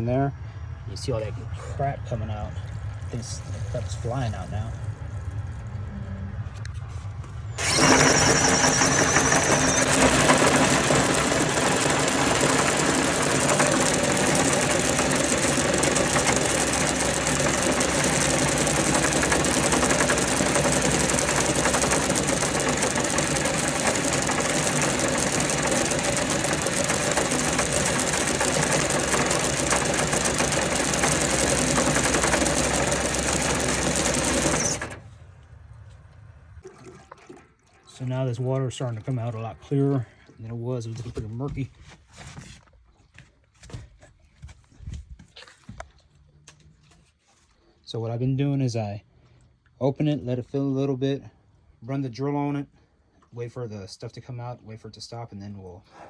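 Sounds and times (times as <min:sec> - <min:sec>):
power drill running: 0:07.5 - 0:35.2
water flushing out: 0:07.6 - 0:35.0, 0:36.6 - 0:39.4.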